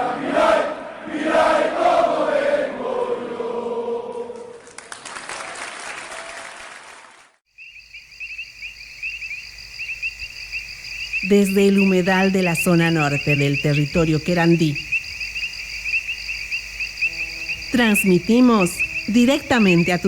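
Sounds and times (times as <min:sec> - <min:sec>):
crowd singing a chant: 0:00.0 - 0:04.7
crowd applause and cheering: 0:04.4 - 0:07.4
crickets chirping: 0:07.5 - 0:20.0.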